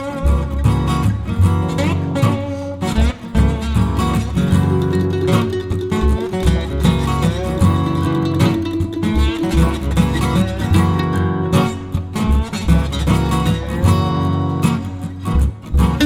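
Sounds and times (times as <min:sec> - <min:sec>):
plucked strummed guitar: 0:00.0 - 0:16.0
steady bass line: 0:03.3 - 0:14.3.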